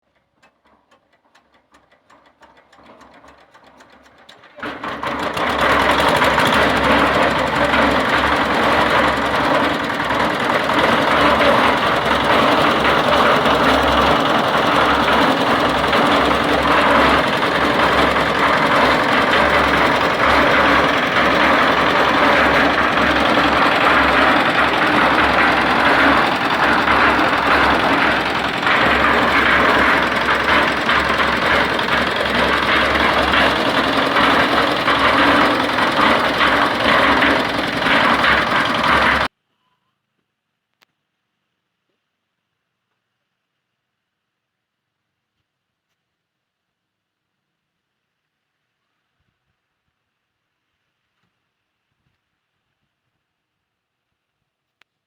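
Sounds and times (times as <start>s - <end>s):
concrete mixer engine running: 0.1s - 39.3s.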